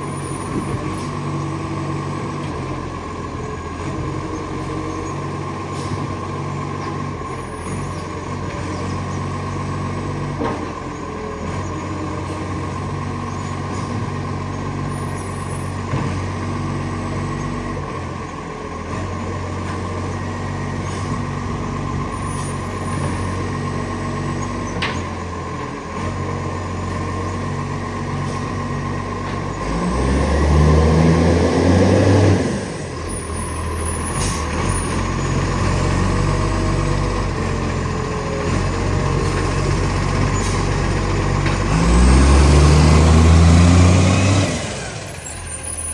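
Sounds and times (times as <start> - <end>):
garbage truck diesel engine: 0.0 - 45.9.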